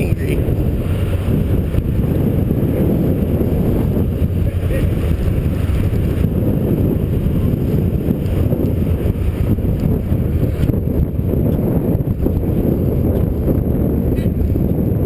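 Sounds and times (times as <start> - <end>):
boat engine rumble: 0.0 - 15.0
wind buffeting microphone: 0.0 - 15.0.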